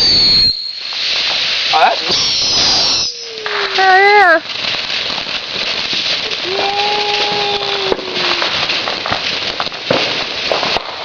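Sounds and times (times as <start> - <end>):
steady whistling tone: 0.0 - 1.0, 2.0 - 3.8
firework fountain hissing: 0.0 - 11.0
sharp firework pops: 0.0 - 11.0.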